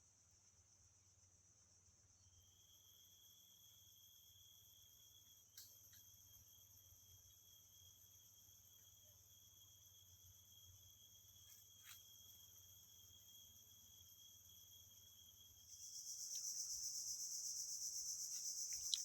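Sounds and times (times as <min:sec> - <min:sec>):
loud high insect song: 0:00.0 - 0:19.0
insect chorus shrilling: 0:09.5 - 0:19.0.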